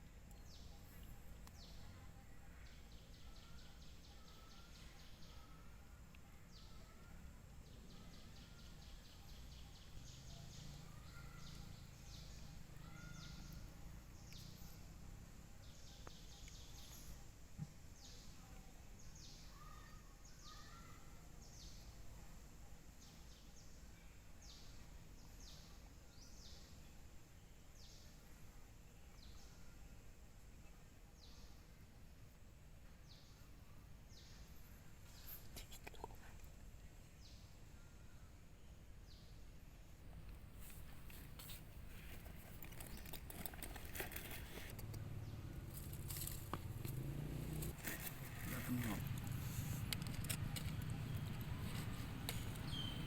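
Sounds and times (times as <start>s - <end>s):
bird chirps: 47.6s - 53.0s.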